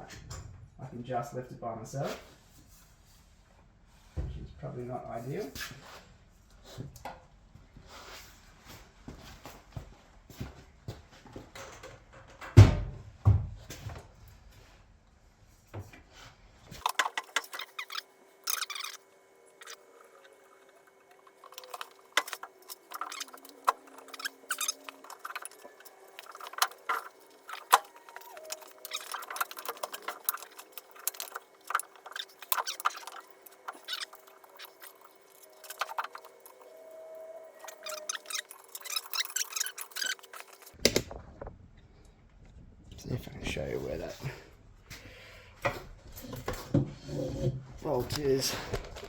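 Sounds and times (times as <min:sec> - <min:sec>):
metal tools clinking and rattling: 0:21.4 - 0:36.6, 0:37.6 - 0:40.8.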